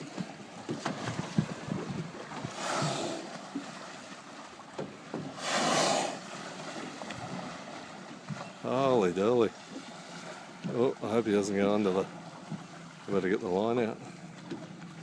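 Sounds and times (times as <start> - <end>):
small knocks on hull: 0.0 - 2.5, 4.7 - 5.4, 12.4 - 12.8
water lapping against hull: 0.0 - 15.0
whales blowing: 1.0 - 4.3, 5.2 - 8.6.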